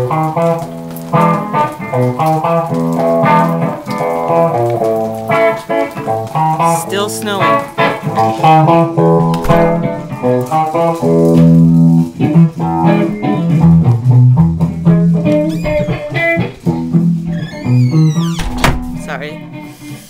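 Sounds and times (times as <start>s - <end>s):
plucked guitar melody: 6.3s - 11.6s
bass guitar line: 9.0s - 10.9s.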